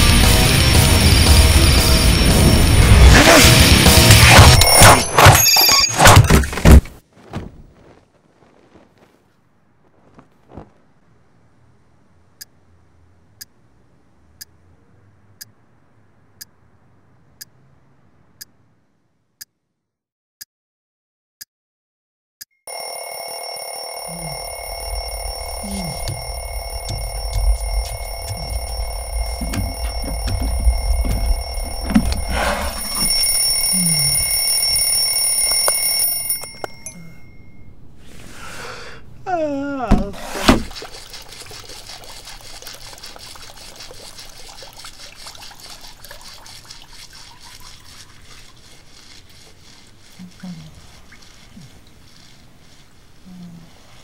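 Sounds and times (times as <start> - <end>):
clock ticking: 24.8 - 35.8.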